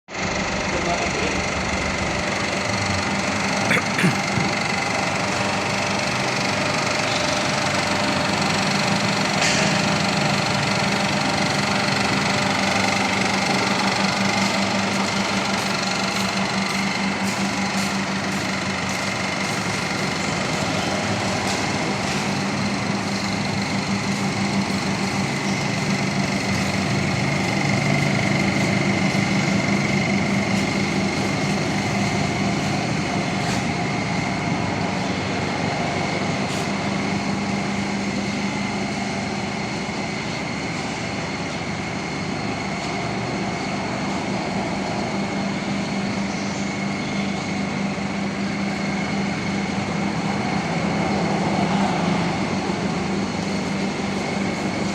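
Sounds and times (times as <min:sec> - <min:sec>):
car engine running: 0:00.1 - 0:42.2.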